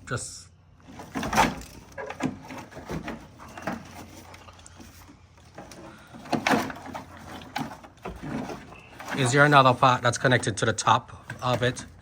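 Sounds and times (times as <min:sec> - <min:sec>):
knocks and clunks of car parts: 0:00.9 - 0:04.2, 0:05.5 - 0:09.6.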